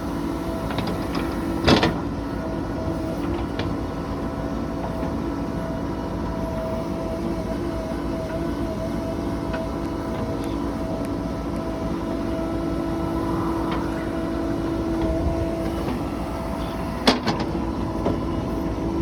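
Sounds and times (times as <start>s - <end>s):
heavy diesel engine running: 0.0s - 19.0s
steady whine: 7.1s - 19.0s.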